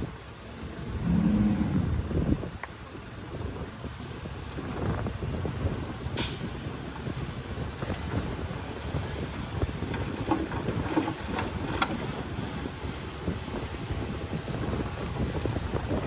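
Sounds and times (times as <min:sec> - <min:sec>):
wind buffeting microphone: 0:00.0 - 0:16.0
heavy machinery rumbling: 0:05.6 - 0:16.0.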